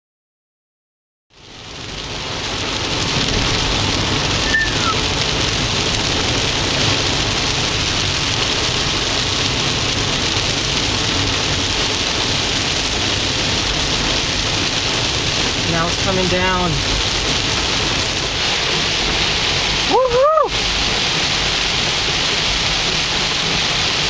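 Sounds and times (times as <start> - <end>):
heavy rain pouring: 1.3 - 24.0
brief high squeak: 4.4 - 5.0.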